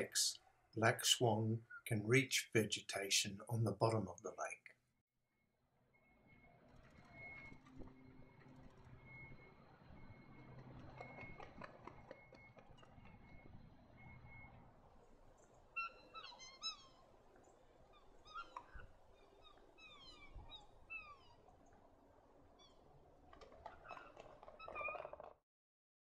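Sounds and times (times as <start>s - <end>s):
low harsh swan calls: 15.7s - 17.2s, 17.8s - 21.5s
swans bugling whistles: 15.7s - 17.2s.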